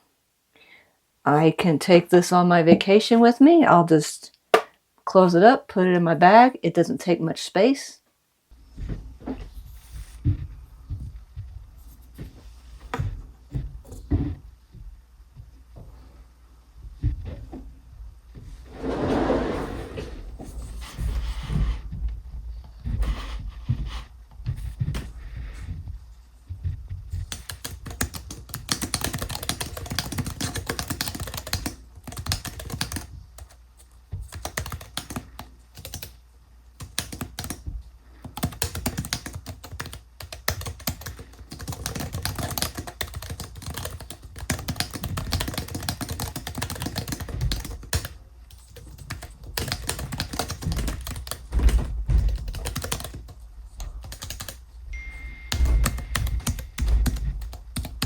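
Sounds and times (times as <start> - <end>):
keyboard typing clicks: 55.5 - 58.0.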